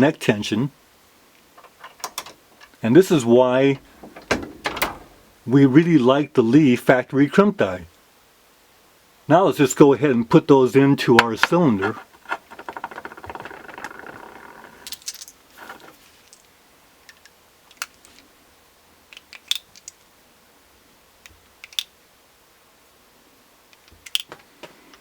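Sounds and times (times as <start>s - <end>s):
brass cartridges rattling in hand: 11.3s - 16.0s
cartridges clicking into revolver cylinder: 21.6s - 21.9s.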